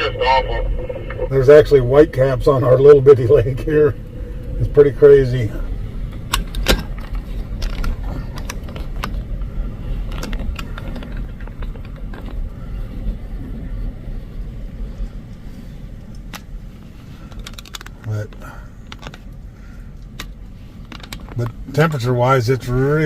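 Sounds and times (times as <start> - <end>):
strong wind buffeting microphone: 0.0 - 18.0.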